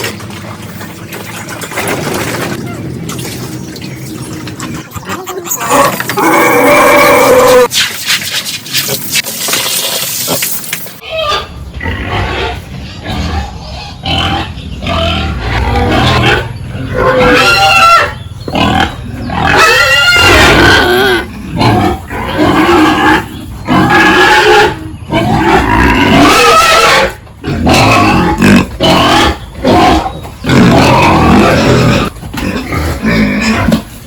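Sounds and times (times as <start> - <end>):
pigs squealing: 4.5 - 8.0, 10.2 - 34.0.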